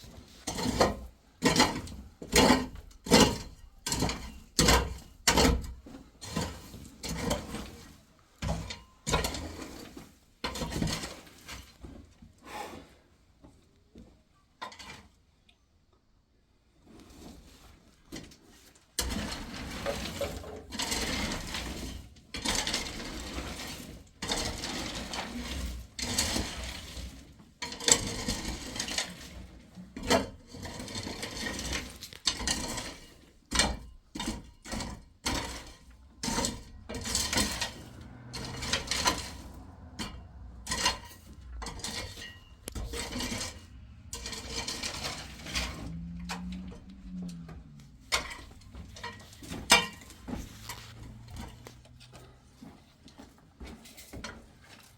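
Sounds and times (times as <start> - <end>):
rough scraping strokes: 34.2 - 52.9.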